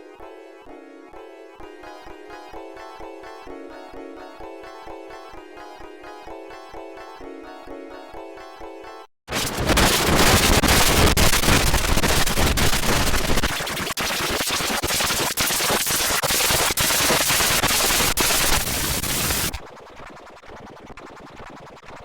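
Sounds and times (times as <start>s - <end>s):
harsh distorted noise crackling: 9.3s - 19.6s.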